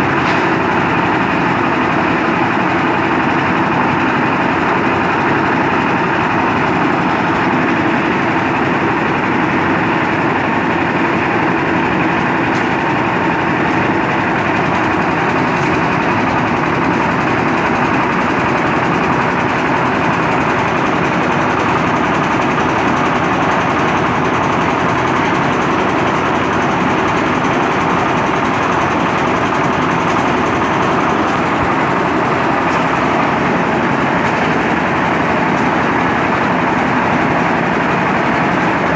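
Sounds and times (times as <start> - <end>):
concrete mixer engine running: 0.0 - 38.9.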